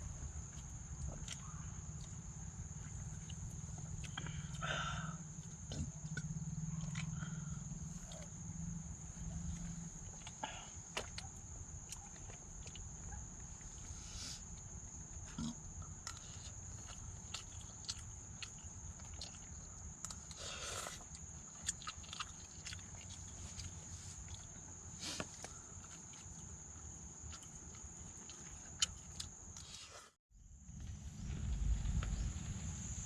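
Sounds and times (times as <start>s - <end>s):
low steady rumble: 0.0s - 20.3s, 30.3s - 33.0s
insects chirring: 0.0s - 33.0s.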